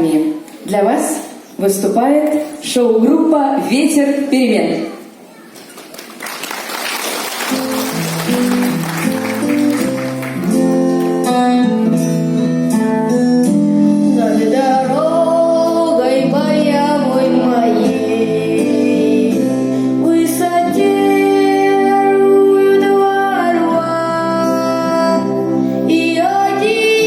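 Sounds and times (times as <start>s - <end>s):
voices singing with vibrato: 14.3s - 27.0s.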